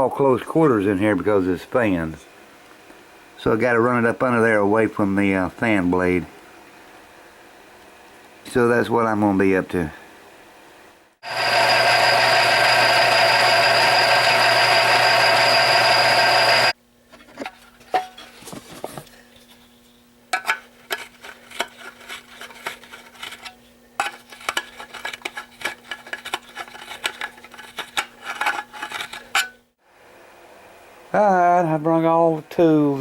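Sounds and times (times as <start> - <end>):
faint steady hum: 0.0 - 33.0
electric drill drilling sheet metal: 11.2 - 16.8.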